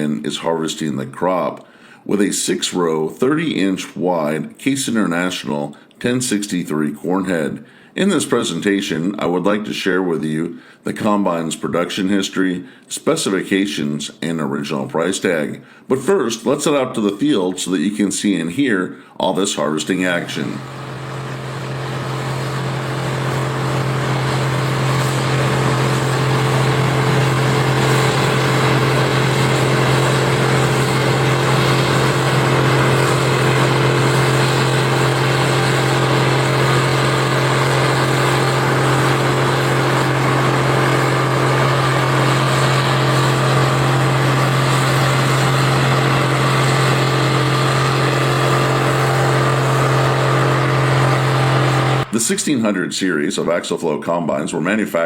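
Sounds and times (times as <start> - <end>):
combine harvester running: 20.2 - 52.1.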